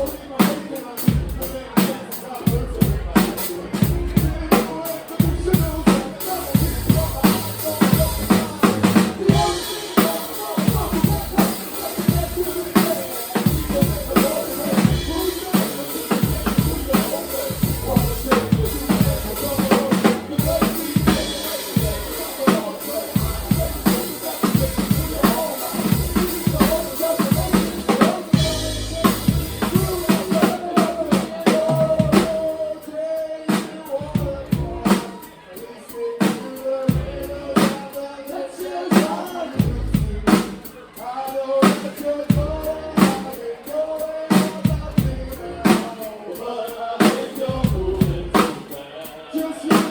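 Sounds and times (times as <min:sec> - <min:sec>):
live band playing: 0:00.0 - 0:49.9.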